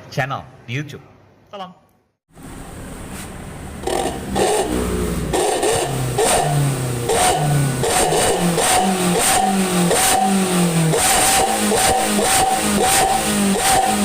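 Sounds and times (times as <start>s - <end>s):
engine revving with growling exhaust: 3.5s - 14.0s.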